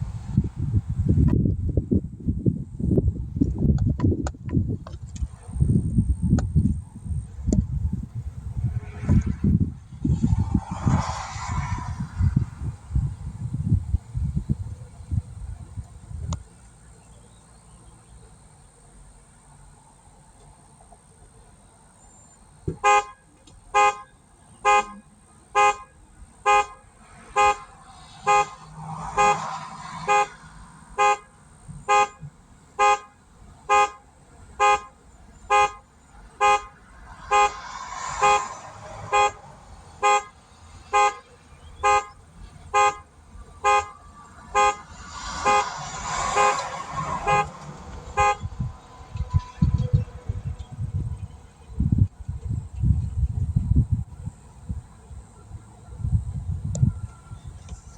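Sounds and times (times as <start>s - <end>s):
car horn honking: 22.7s - 51.3s.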